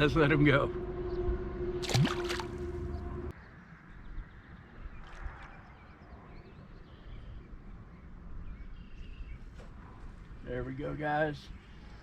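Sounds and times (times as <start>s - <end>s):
steady low rumble: 0.0s - 6.6s.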